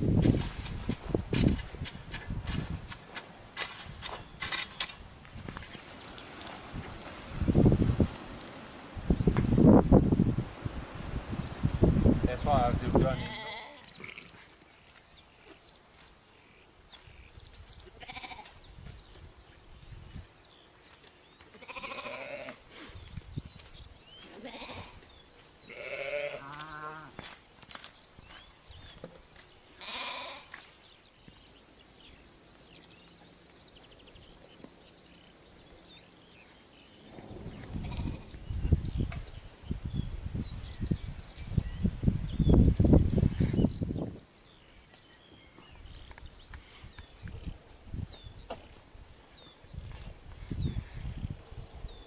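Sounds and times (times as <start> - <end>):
sheep bleating: 13.0 - 14.3, 18.0 - 18.5, 21.6 - 22.6, 24.3 - 25.0, 25.7 - 27.1, 29.8 - 30.5.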